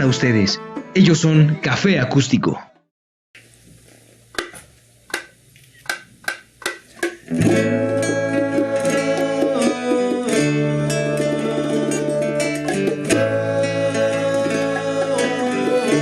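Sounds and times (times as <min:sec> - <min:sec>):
sharp taps: 0:04.3 - 0:07.3
band song with acoustic guitar: 0:07.0 - 0:16.0.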